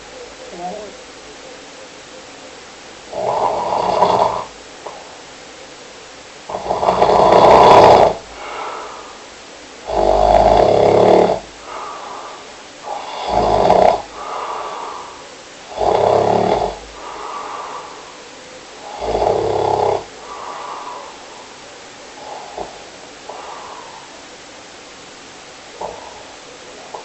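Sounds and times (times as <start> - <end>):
loud snoring: 3.1 - 4.5, 6.5 - 8.7, 9.8 - 18.1, 18.8 - 21.2.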